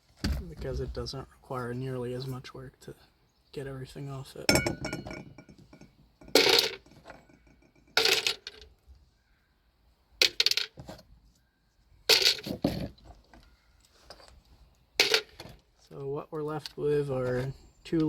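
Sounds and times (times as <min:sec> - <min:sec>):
metal parts clattering onto pile: 0:06.2 - 0:08.7, 0:12.1 - 0:12.9, 0:15.0 - 0:15.6.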